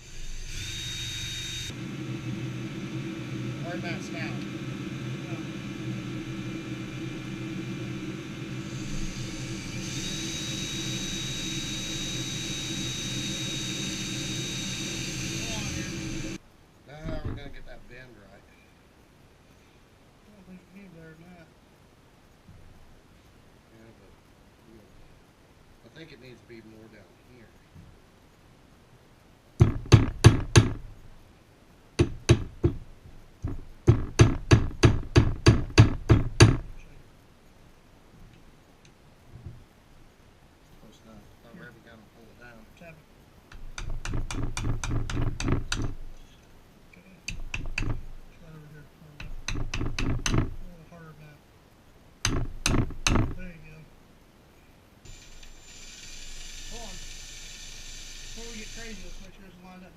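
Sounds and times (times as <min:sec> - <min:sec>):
electric drill running: 0:00.0 - 0:03.2, 0:04.8 - 0:16.4, 0:55.1 - 0:59.3
drill bit whine cutting metal: 0:00.0 - 0:16.4, 0:55.1 - 0:59.4.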